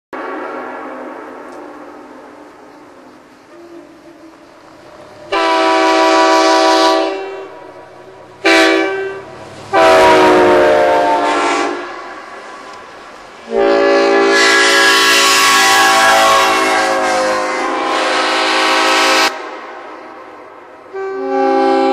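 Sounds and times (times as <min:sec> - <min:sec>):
locomotive air horn blasts: 0:02.4 - 0:04.6, 0:05.3 - 0:12.3, 0:13.4 - 0:19.4, 0:20.9 - 0:21.9.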